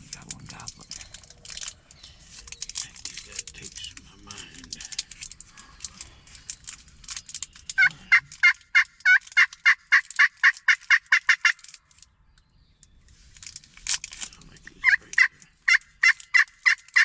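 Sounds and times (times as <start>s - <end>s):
light clicking and crinkling: 0.0s - 10.8s, 11.5s - 17.0s
wild turkey yelps: 7.7s - 11.6s, 14.8s - 17.0s.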